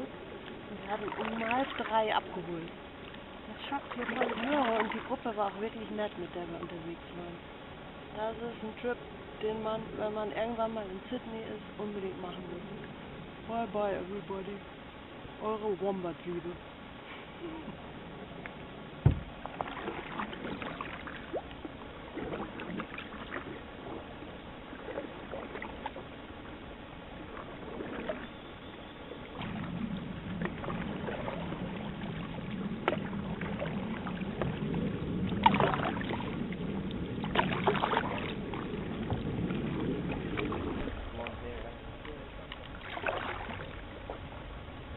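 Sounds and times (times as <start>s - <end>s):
paddle splashes: 0.0s - 7.5s, 17.0s - 44.9s
paddles knocking against hull: 18.4s - 24.1s, 29.4s - 41.4s
steady low noise: 28.4s - 42.5s.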